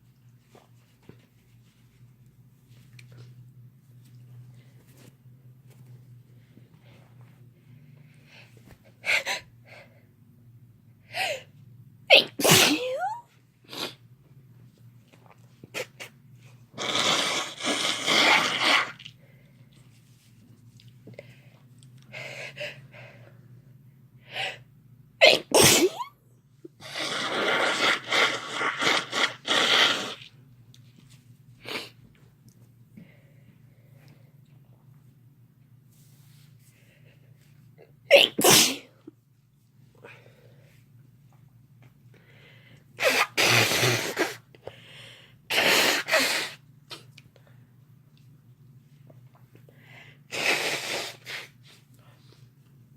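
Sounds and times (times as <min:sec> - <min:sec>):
person sneezing: 0:12.1 - 0:14.0, 0:25.2 - 0:26.1, 0:38.1 - 0:39.0, 0:43.0 - 0:44.5, 0:45.5 - 0:47.1.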